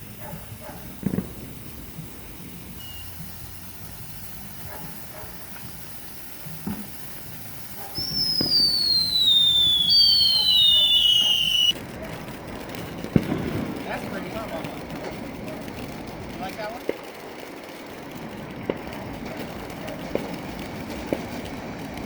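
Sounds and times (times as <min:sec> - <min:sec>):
shrill firework whistles: 0:00.0 - 0:11.8
faint firework pops: 0:00.0 - 0:17.1, 0:18.6 - 0:22.0.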